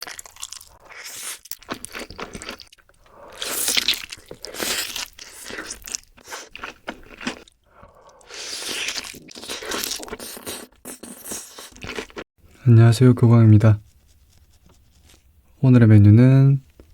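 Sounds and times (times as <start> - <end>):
crunchy chewing of fried chicken: 0.0 - 12.3.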